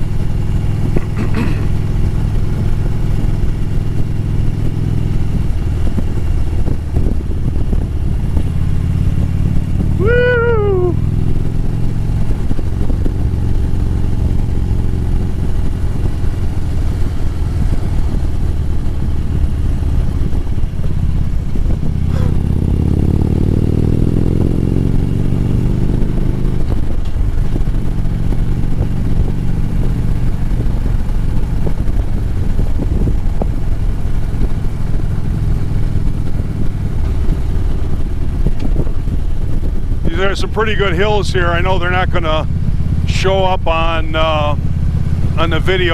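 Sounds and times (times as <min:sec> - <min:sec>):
motorcycle engine running: 0:00.0 - 0:45.9.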